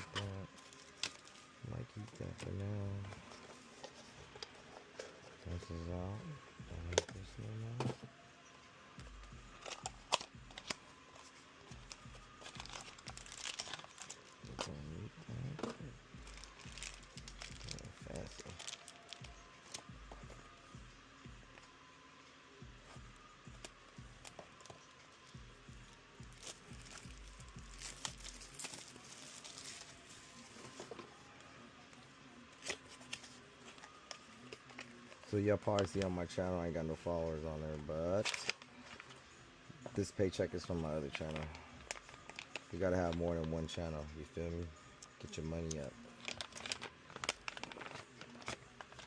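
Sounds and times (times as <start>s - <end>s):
wrapping crinkling and tearing: 0.0s - 6.2s, 9.6s - 19.9s, 26.2s - 31.2s, 32.5s - 36.2s, 38.1s - 39.2s, 40.6s - 43.8s, 45.7s - 49.0s
packaging clicks: 9.6s - 10.8s, 11.9s - 14.8s, 15.4s - 19.9s, 46.2s - 49.0s.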